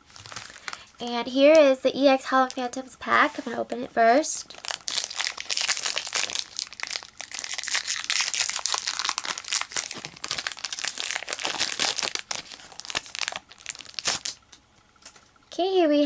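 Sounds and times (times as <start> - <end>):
foil wrapper crinkling torn open: 0.1 - 0.9, 4.5 - 14.5.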